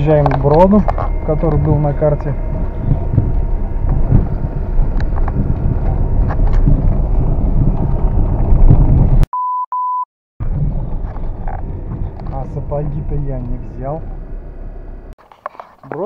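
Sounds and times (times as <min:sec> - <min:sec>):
car driving on rough track: 0:00.0 - 0:09.3, 0:10.4 - 0:16.0
short high beeps: 0:09.4 - 0:10.0.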